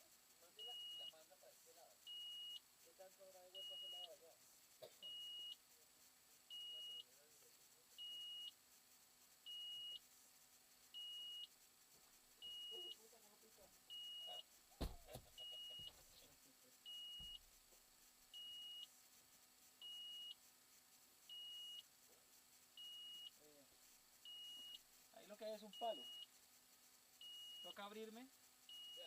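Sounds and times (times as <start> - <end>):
electronic warning beeps: 0.6 - 1.2, 2.0 - 2.7, 3.5 - 4.2, 5.0 - 5.6, 6.5 - 7.1, 8.0 - 8.6, 9.5 - 10.1, 10.9 - 11.6, 12.4 - 13.0, 13.9 - 14.5, 15.4 - 16.0, 16.8 - 17.4, 18.3 - 18.9, 19.8 - 20.4, 21.3 - 21.9, 22.8 - 23.4, 24.2 - 24.8, 25.6 - 26.3, 27.2 - 29.0
sharp knock: 14.8 - 15.2
dull thud: 14.8 - 15.3.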